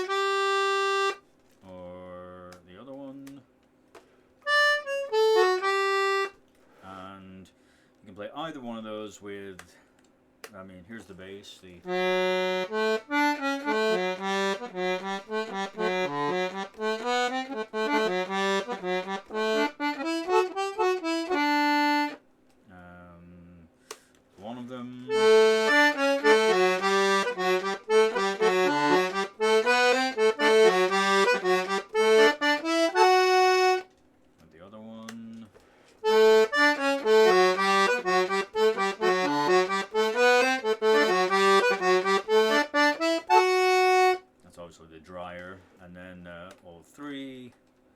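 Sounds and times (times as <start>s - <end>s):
button accordion playing quick tune: 0.0s - 1.2s, 4.5s - 6.3s, 11.9s - 22.2s, 25.1s - 33.9s, 36.0s - 44.2s.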